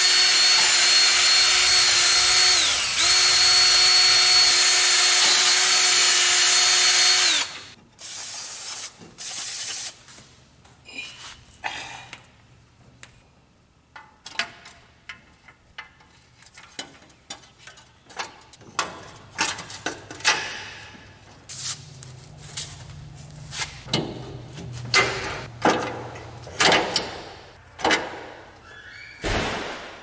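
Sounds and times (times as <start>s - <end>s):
hand tools clicking and knocking: 14.0s - 22.1s, 23.8s - 28.7s.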